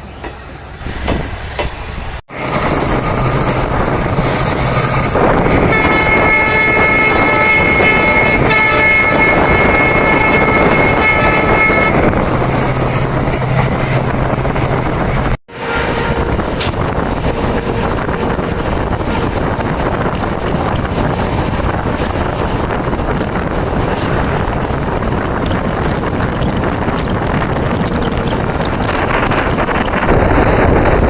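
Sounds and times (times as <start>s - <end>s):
locomotive wheels rumbling on rail: 0.0s - 31.0s
train horn chord: 5.5s - 12.2s.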